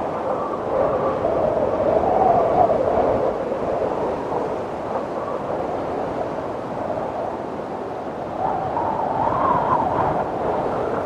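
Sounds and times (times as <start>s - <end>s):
howling wind: 0.0s - 11.0s.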